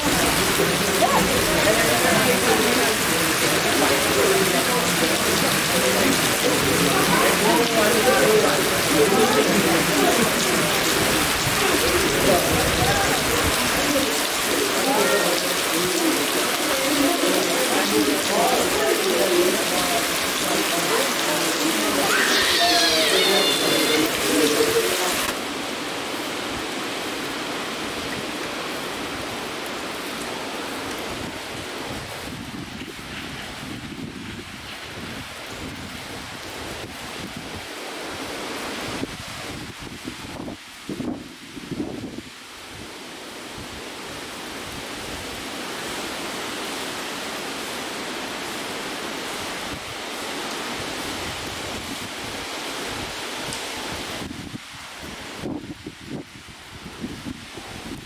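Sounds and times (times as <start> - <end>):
heavy rain falling: 0.0 - 58.0
pitched call or voice: 21.9 - 25.3.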